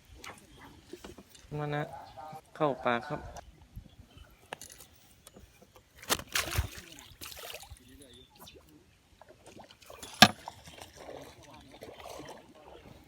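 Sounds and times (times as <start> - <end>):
water splashing and sloshing: 5.4 - 13.0.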